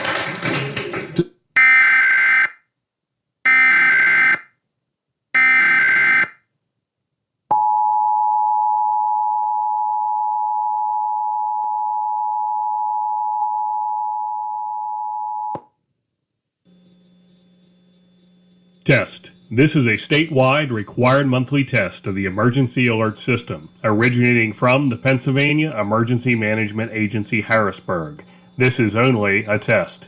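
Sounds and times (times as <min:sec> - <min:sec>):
buzzing digital data chirps: 0:16.7 - 0:30.0.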